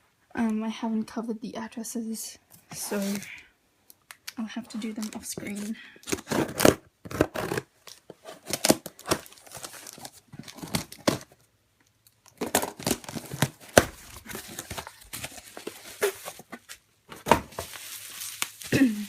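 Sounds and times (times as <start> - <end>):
cardboard box ripping: 6.1 - 11.3, 12.4 - 18.9.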